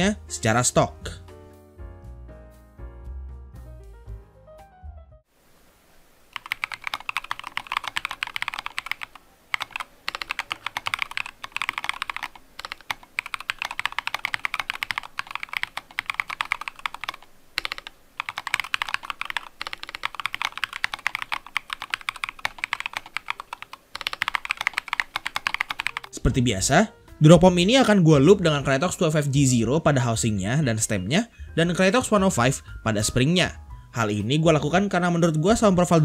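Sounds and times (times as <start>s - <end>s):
typing on mechanical keyboard: 6.4s - 26.1s.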